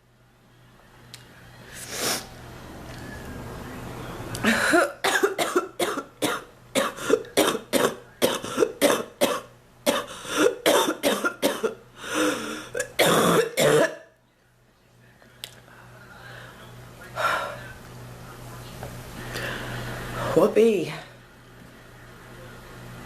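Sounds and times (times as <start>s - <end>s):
woman coughing rapidly: 4.4s - 11.8s, 12.8s - 14.1s.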